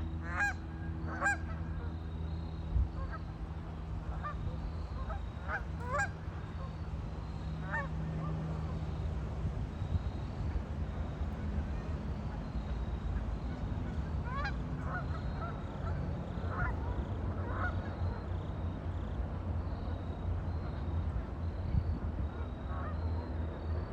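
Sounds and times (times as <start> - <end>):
waterfowl calling: 0.2 - 1.9, 4.1 - 6.7, 11.7 - 18.5.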